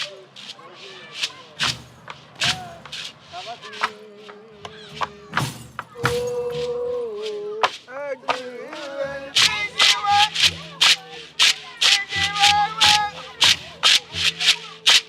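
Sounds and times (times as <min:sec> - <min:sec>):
sharp percussion strikes: 0:00.0 - 0:04.0, 0:04.6 - 0:15.0
voices chanting: 0:00.0 - 0:15.0.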